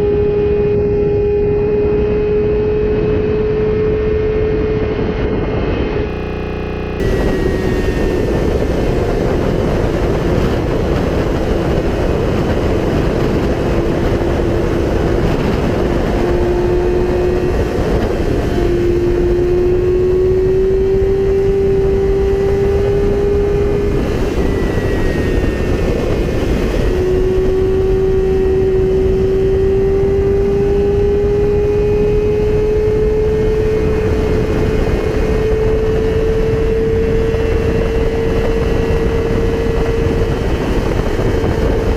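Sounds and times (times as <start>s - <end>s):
motorcycle engine at high revs: 0.0s - 41.9s
wind rushing on microphone: 0.0s - 41.9s.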